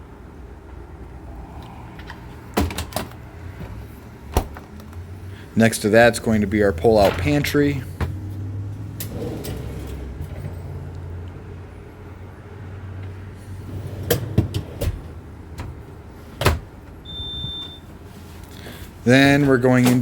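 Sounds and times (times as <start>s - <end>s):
cabinet clicks and rattles: 2.5s - 3.7s.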